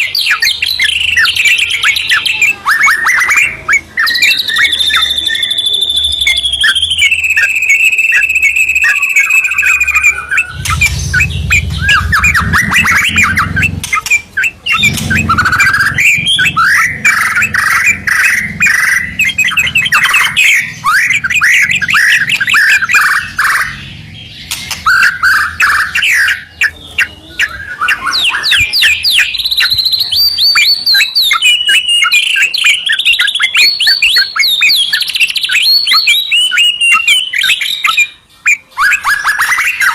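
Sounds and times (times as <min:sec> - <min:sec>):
bird trills and chattering: 0:00.0 - 0:39.9
songbirds singing: 0:00.0 - 0:39.9
long clear bird whistles: 0:00.3 - 0:23.6.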